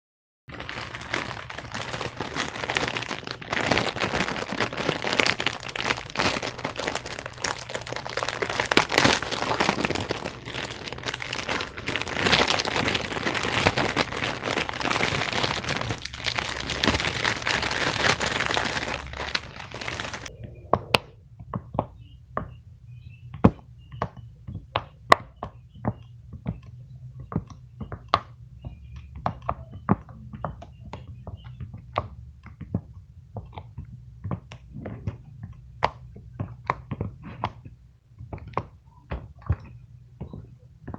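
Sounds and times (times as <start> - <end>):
plastic wrapping crinkling: 0.5 - 20.9.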